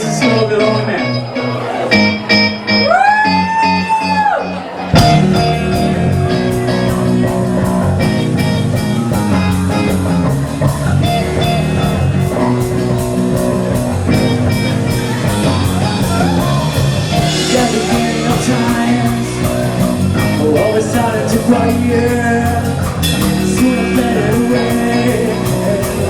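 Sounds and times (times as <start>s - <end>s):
bass guitar: 0.0s - 26.0s
electric guitar: 0.0s - 26.0s
steady drum beat: 5.0s - 26.0s.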